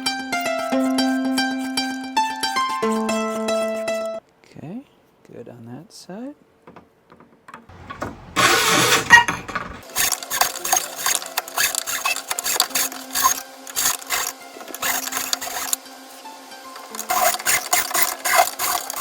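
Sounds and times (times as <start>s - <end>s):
hand-filing strokes: 0.0s - 3.9s, 8.1s - 15.8s, 17.0s - 19.0s
small power tool running: 8.2s - 15.8s, 17.0s - 19.0s.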